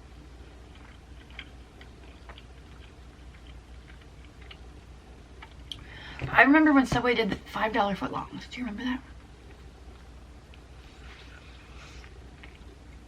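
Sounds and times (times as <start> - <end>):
faint chewing: 0.0 - 5.9, 9.1 - 13.0
low room hum: 0.0 - 13.0.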